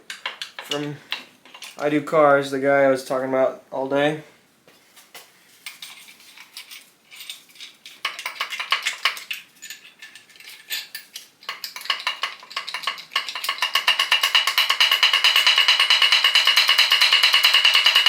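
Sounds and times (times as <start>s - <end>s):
steel tools clinking: 5.6s - 18.0s
hand ratchet clicking: 11.4s - 18.0s.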